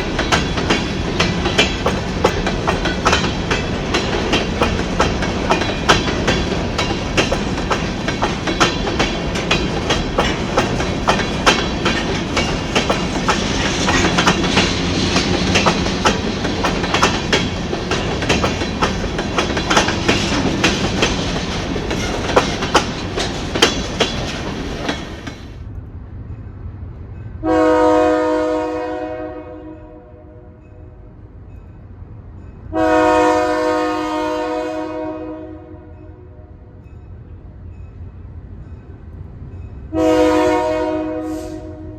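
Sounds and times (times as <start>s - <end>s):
train wheels clattering: 0.0s - 25.6s
locomotive air horn: 27.4s - 30.6s, 32.7s - 36.4s, 39.9s - 41.9s.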